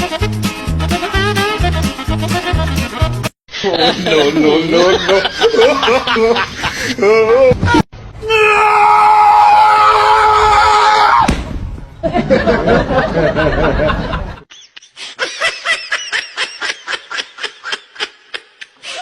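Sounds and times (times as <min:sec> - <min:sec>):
person laughing: 0:03.5 - 0:07.8, 0:12.1 - 0:19.0
person screaming: 0:08.2 - 0:11.3.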